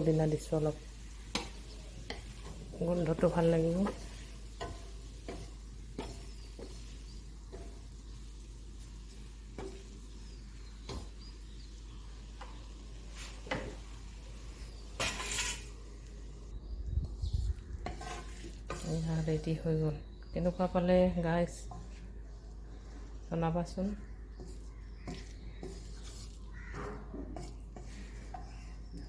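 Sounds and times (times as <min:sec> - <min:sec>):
utensil stirring in frying pan: 0:00.0 - 0:16.1, 0:17.4 - 0:19.6, 0:21.4 - 0:29.0
utensil scraping pan: 0:15.0 - 0:15.8, 0:17.8 - 0:19.1, 0:24.4 - 0:28.6.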